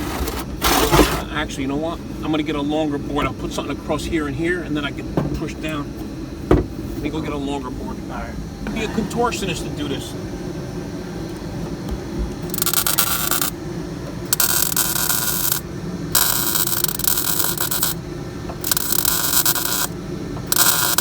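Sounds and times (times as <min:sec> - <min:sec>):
welder crackling: 0:12.4 - 0:13.6, 0:14.2 - 0:21.0.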